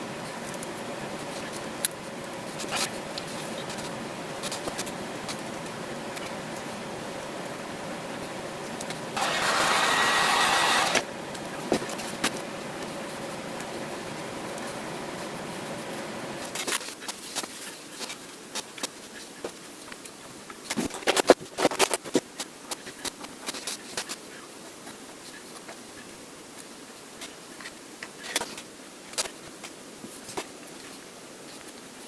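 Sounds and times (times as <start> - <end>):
steady buzz: 9.2 - 11.1.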